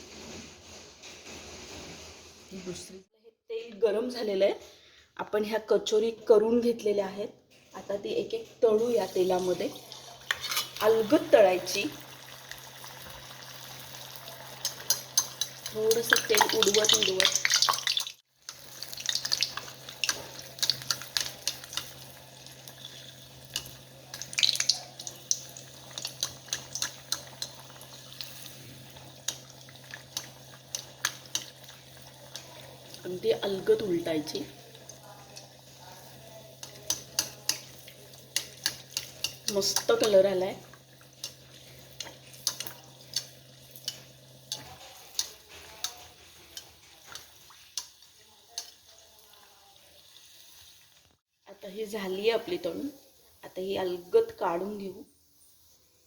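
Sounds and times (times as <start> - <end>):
deep-frying sizzle: 8.7 - 51.2
oil popping and crackling: 9.4 - 49.4
metal spoon clicking on pan: 14.6 - 17.8, 18.4 - 22.1, 23.5 - 27.6, 29.2 - 33.0, 36.6 - 40.2, 41.2 - 48.8.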